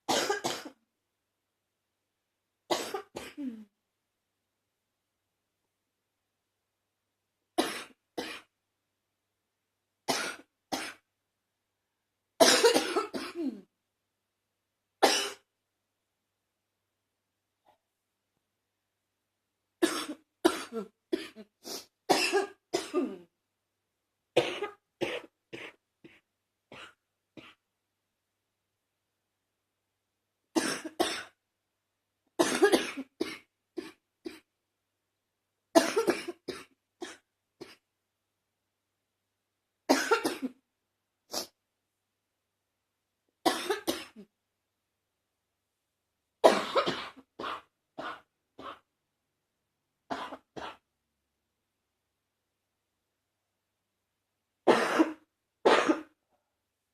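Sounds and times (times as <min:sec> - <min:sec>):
person coughing: 0:00.1 - 0:00.8, 0:02.7 - 0:03.7, 0:12.4 - 0:13.7, 0:15.0 - 0:15.5, 0:19.8 - 0:21.5, 0:22.1 - 0:23.3, 0:24.4 - 0:26.2, 0:30.6 - 0:31.4, 0:32.4 - 0:34.5, 0:35.8 - 0:37.8, 0:39.9 - 0:40.6, 0:43.5 - 0:44.3, 0:46.4 - 0:48.9, 0:50.1 - 0:50.8, 0:54.7 - 0:56.2.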